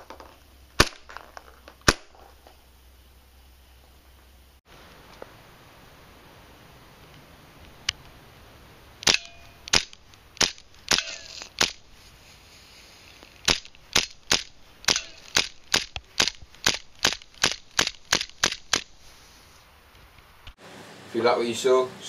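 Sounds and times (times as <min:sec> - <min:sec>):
airsoft pistol shots: 0:09.0 - 0:11.8, 0:13.5 - 0:18.9.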